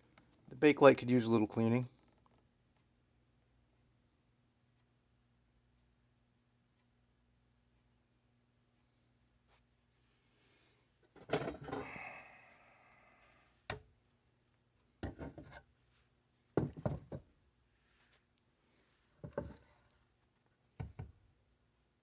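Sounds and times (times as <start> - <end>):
knocks and clunks on surface: 11.2 - 11.9, 15.0 - 15.6, 16.6 - 17.3, 19.2 - 19.7, 20.8 - 21.2.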